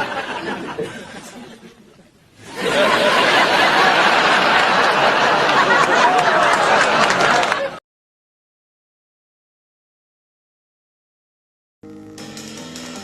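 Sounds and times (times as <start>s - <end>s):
studio audience laughing: 0.0s - 7.8s.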